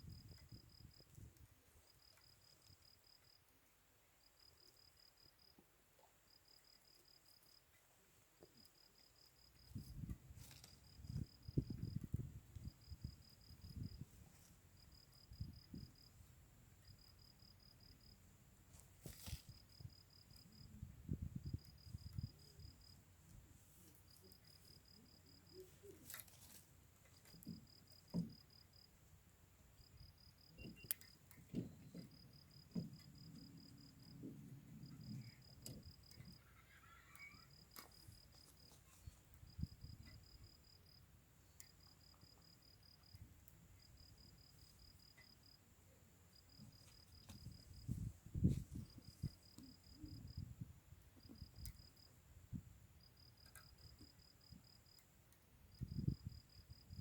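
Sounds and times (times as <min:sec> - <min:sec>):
insects chirping: 0:00.0 - 0:03.5, 0:04.1 - 0:07.8, 0:08.4 - 0:57.0
campfire crackling: 0:09.5 - 0:31.5.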